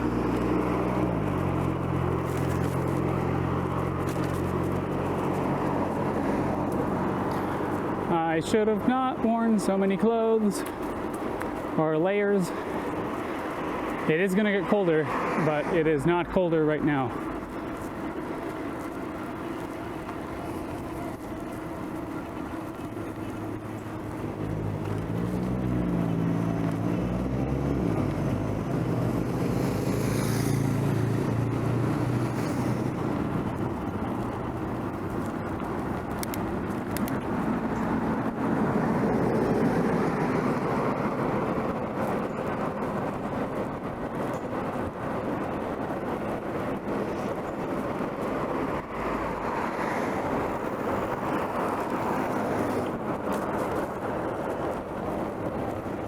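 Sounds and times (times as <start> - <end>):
road traffic: 0.0 - 56.0
vehicle engine passing by: 23.1 - 43.0.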